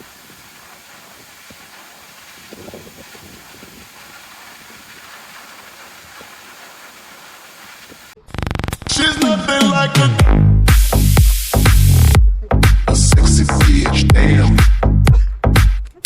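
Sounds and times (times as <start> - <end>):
steady hiss: 0.0 - 8.2, 10.7 - 12.1.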